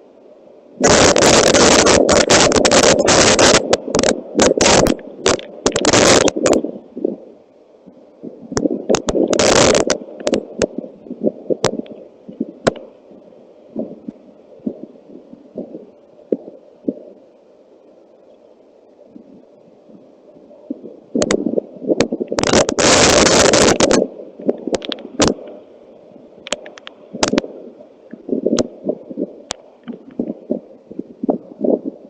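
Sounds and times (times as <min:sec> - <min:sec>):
faint steady hum: 0:00.0 - 0:32.0
sharp clicks: 0:00.8 - 0:06.6, 0:24.7 - 0:25.4, 0:26.4 - 0:27.5
crackling thumps: 0:00.8 - 0:07.2, 0:08.2 - 0:12.9, 0:13.7 - 0:17.1, 0:20.7 - 0:25.6, 0:26.4 - 0:32.0.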